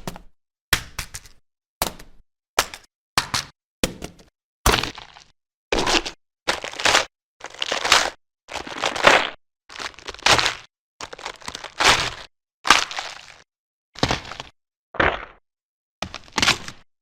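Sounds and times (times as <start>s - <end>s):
wet crunches of flesh and bone: 4.7s - 15.4s, 16.0s - 16.9s.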